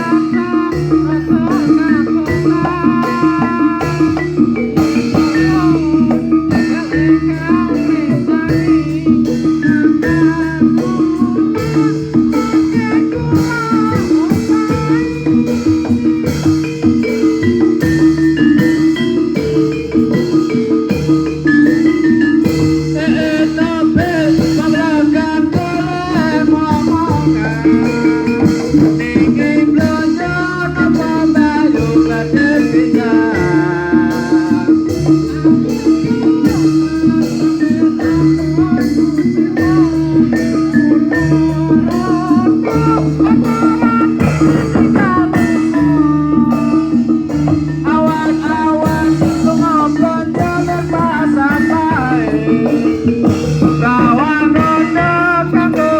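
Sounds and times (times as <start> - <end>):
drum beats: 0.0 - 55.9
gamelan ensemble music: 0.0 - 55.9
mallet percussion: 0.0 - 55.9
wavering melodic line: 0.0 - 55.9.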